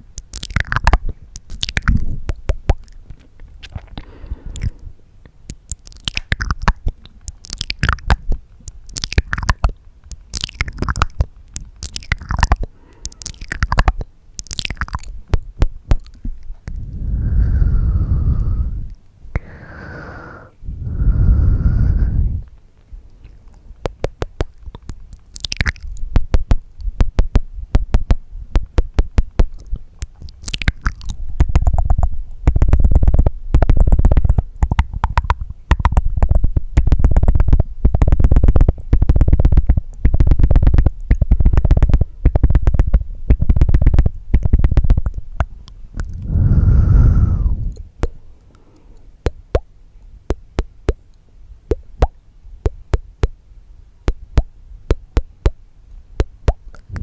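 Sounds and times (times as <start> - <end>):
tongue clicks and mouth noises: 0.0 - 57.0
breaths into microphone: 3.9 - 5.0, 12.6 - 13.4, 16.7 - 22.6, 46.0 - 49.2.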